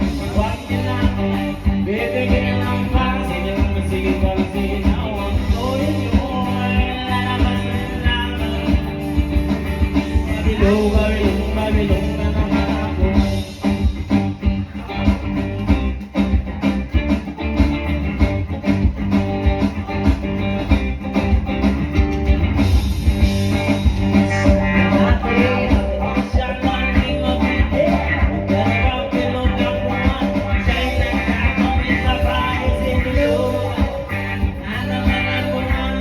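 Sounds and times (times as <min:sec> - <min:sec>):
person singing: 0:00.0 - 0:13.7, 0:24.1 - 0:36.0
drum kit: 0:00.0 - 0:36.0
electric guitar: 0:00.0 - 0:36.0.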